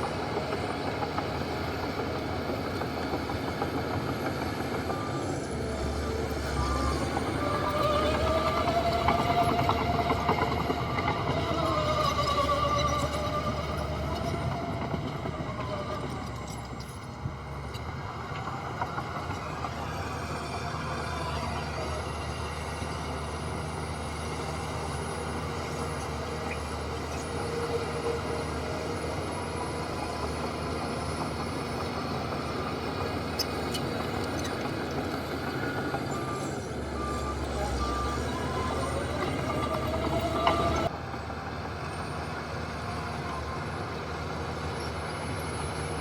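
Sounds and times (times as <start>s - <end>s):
heavy diesel machinery engine drone: 0.0s - 46.0s
high whining tones: 33.7s - 40.9s.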